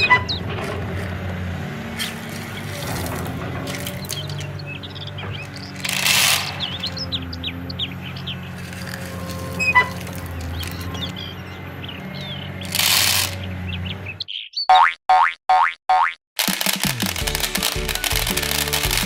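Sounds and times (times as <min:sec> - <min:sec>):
low engine hum: 0:00.0 - 0:14.2
birds chirping: 0:00.0 - 0:14.9
cartoon boing: 0:14.7 - 0:16.2.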